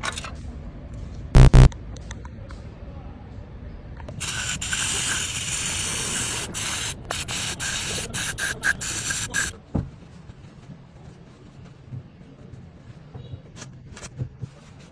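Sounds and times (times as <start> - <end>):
pressurised spray hissing: 4.1 - 9.5.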